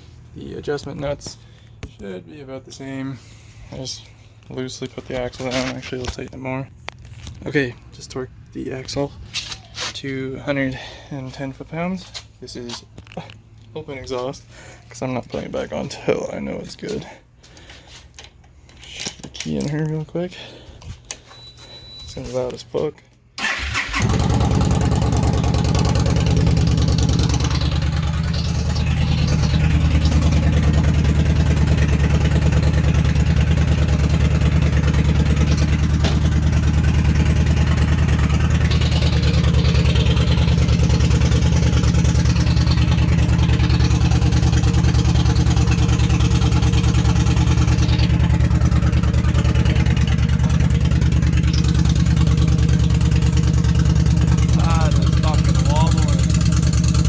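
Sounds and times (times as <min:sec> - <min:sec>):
motorcycle engine idling loudly: 0:23.9 - 0:57.0.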